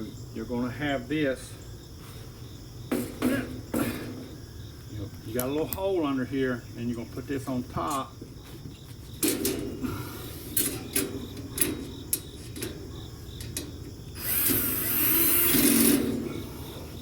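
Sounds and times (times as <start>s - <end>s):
metal grill parts clicking: 9.2s - 14.7s
power drill running: 14.2s - 16.1s.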